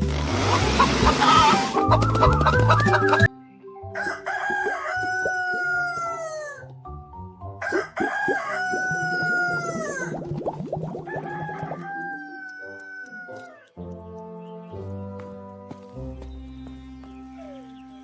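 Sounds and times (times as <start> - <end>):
rooster crowing: 0.8 - 1.9, 4.0 - 6.6, 7.6 - 10.1, 11.1 - 13.7.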